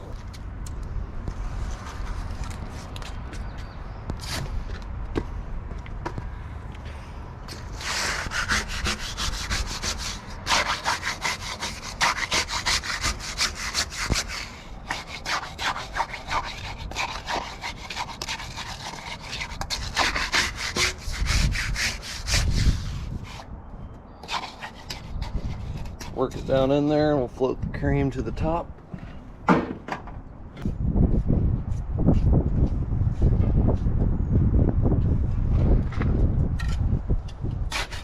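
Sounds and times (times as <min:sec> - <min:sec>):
tool scraping concrete mix: 0:07.5 - 0:23.5, 0:24.2 - 0:26.9, 0:37.7 - 0:38.0.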